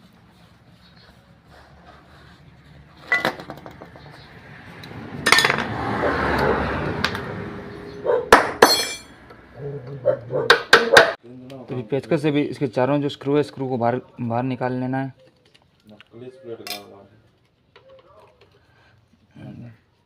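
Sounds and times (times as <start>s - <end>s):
metal hand tools clinking: 8.6s - 9.1s.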